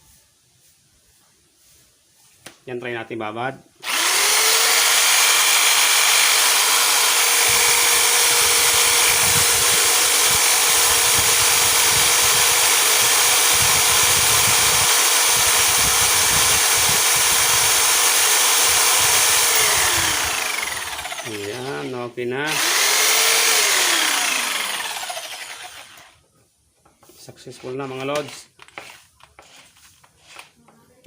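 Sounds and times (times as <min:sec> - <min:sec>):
electric drill motor whine: 0:03.8 - 0:26.2.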